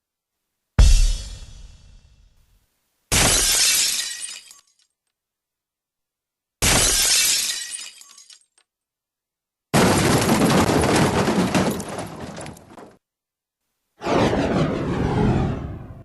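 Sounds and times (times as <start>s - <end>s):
glass breaking crash with crackles: 3.1s - 4.8s, 6.6s - 8.6s, 9.8s - 12.8s
glass shattering: 3.1s - 4.9s, 6.6s - 8.6s, 9.8s - 12.8s.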